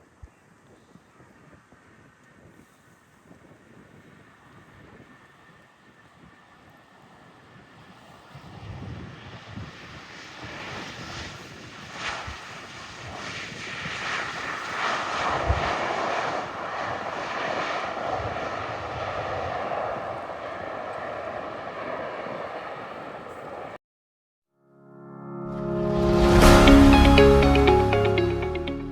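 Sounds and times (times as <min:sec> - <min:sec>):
airliner engine noise overhead: 0:00.0 - 0:23.8.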